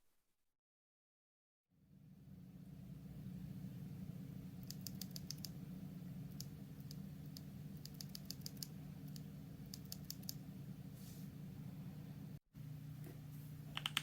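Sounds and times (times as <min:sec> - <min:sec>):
steady low hum: 0:01.8 - 0:14.0
mechanical keyboard typing: 0:04.6 - 0:05.5, 0:07.8 - 0:10.4, 0:13.7 - 0:14.0.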